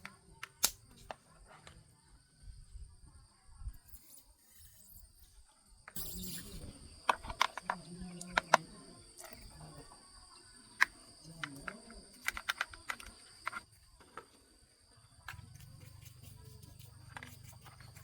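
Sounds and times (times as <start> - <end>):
tools and metal parts clicking: 10.8 - 13.7.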